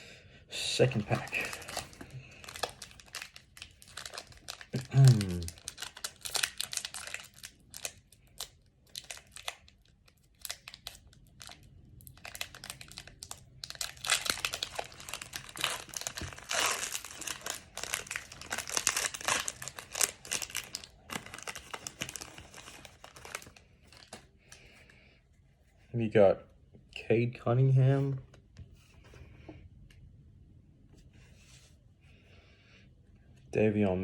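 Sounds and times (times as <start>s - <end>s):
card pack wrapper crinkling: 0.8s - 24.3s.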